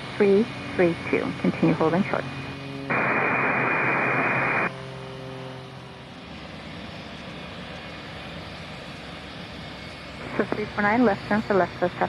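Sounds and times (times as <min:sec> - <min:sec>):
faint hum: 0:00.2 - 0:04.8
radio static burst: 0:02.9 - 0:04.7.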